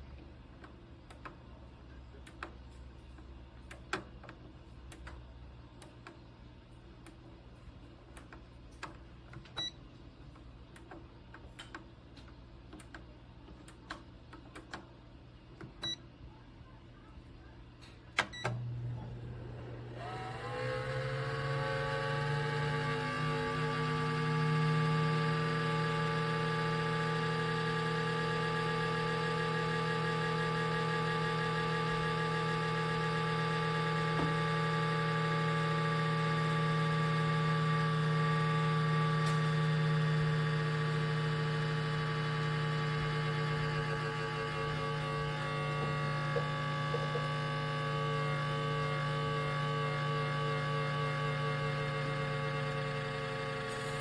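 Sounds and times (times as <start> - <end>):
convection fan humming: 0.0 - 54.0
control panel clicks and beeps: 8.2 - 9.8, 15.7 - 16.1, 18.2 - 18.6.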